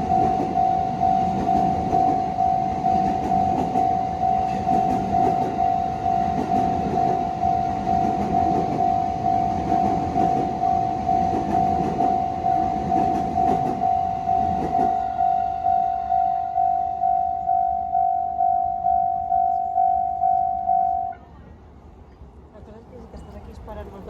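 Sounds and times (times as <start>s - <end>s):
train wheels rumbling and clattering: 0.0s - 15.8s
level-crossing warning bell: 0.0s - 21.2s.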